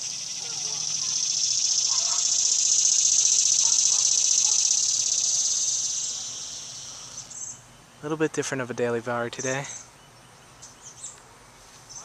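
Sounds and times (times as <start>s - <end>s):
insects buzzing: 0.0s - 8.6s.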